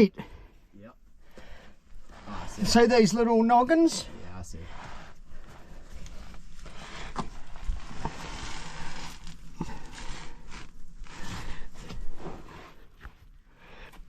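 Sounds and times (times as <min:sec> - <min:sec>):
clothing rustling: 0:04.7 - 0:13.3.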